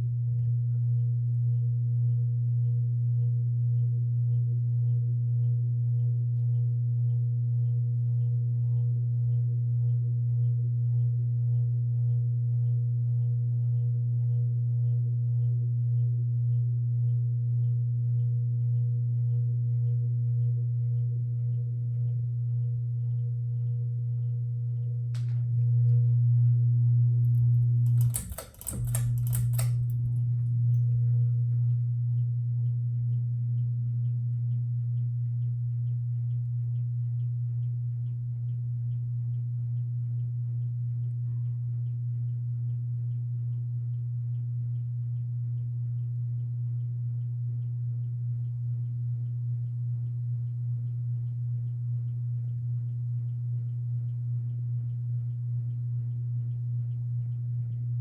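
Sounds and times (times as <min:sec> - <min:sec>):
ceiling fan motor humming: 0:27.1 - 0:30.2
faint regular ticking: 0:27.3 - 0:30.2.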